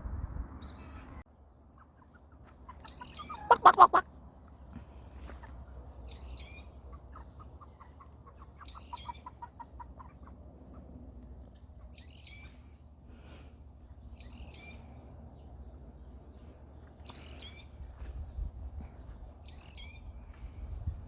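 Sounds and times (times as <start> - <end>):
bird calling: 2.0 - 4.0.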